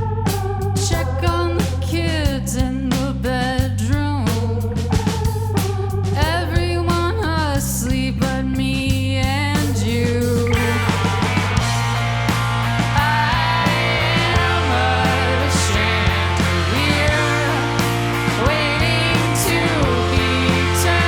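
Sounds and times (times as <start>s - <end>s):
bass guitar: 0.0s - 21.0s
drums: 0.0s - 21.0s
electric guitar: 10.3s - 21.0s
person singing: 12.9s - 21.0s.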